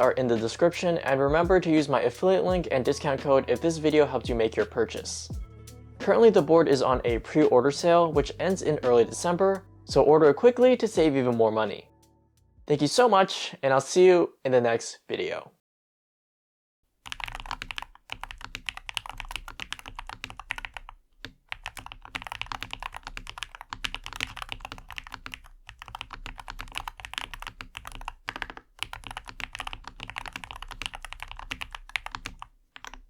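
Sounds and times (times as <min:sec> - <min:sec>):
keyboard typing clacks: 0:17.1 - 0:20.9, 0:21.5 - 0:33.0.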